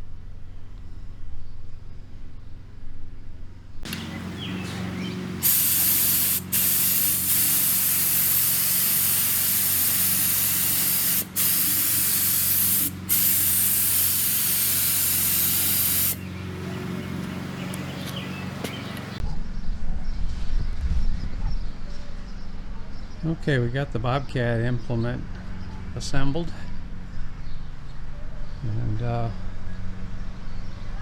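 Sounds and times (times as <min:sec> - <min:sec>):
steady low hum: 0:00.0 - 0:31.0
paint sprayer hissing: 0:03.9 - 0:16.3.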